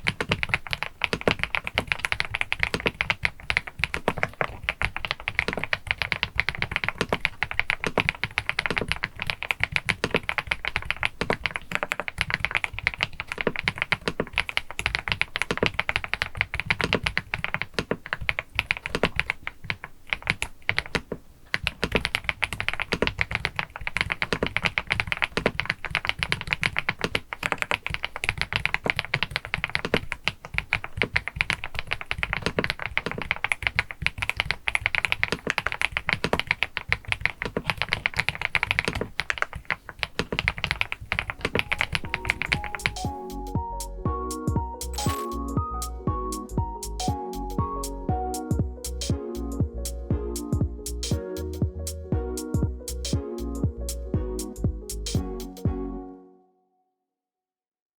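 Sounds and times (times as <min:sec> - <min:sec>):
fast typing on mechanical keyboard: 0:00.0 - 0:43.3.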